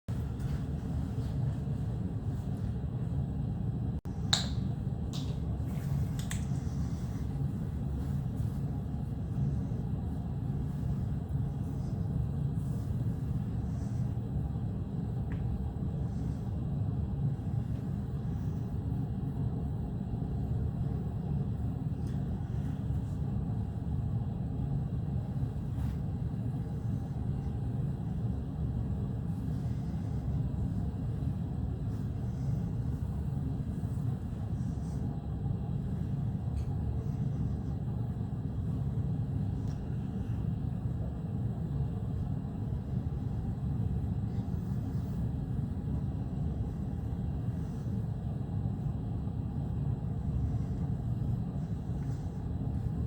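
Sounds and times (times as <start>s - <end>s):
steady low rumble: 0.0s - 53.0s.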